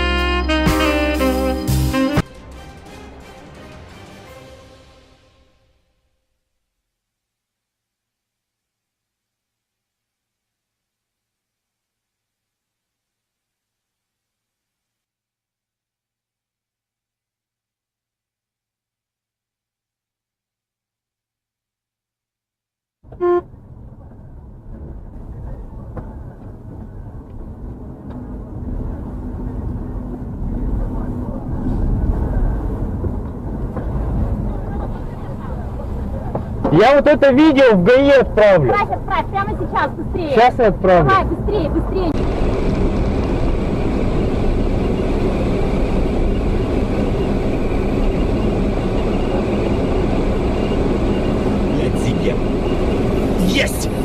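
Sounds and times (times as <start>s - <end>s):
car horn toot: 0.0s - 2.6s, 23.1s - 23.6s
road noise inside car: 23.0s - 54.0s
traffic and engine rumble: 23.1s - 54.0s.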